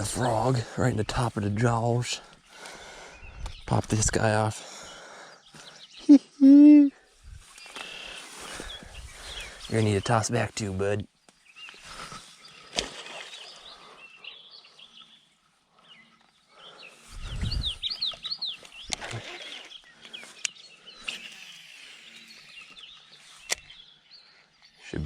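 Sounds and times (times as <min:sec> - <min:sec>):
birds chirping: 0:00.0 - 0:25.0
sharp clicks: 0:18.6 - 0:21.2, 0:23.5 - 0:23.7.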